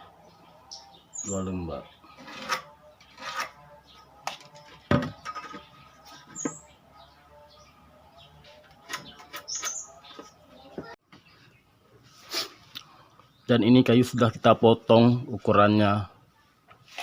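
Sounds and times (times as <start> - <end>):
bird chirping: 0.0 - 11.8.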